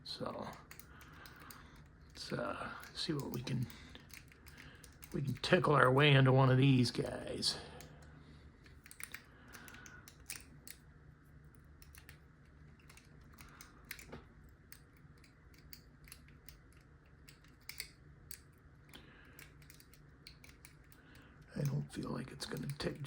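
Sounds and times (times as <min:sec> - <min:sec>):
lock pick clicking in padlock: 0:14.7 - 0:18.6, 0:19.2 - 0:21.0.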